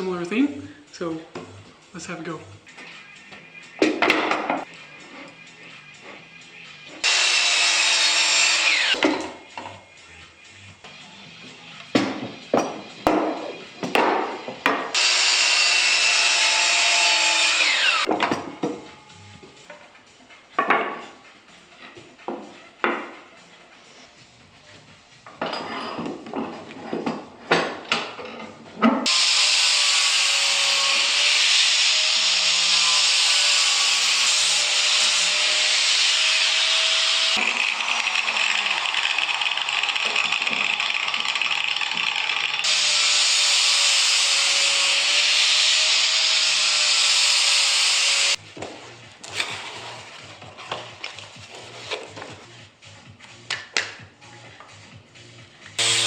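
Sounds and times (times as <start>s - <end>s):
power carving tool rasping wood: 7.0s - 9.0s, 14.9s - 18.1s, 29.0s - 48.4s, 55.8s - 56.0s.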